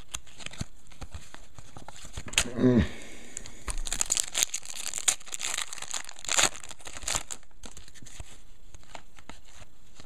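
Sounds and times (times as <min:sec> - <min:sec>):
foil wrappers crinkling and tearing: 0:03.3 - 0:10.0.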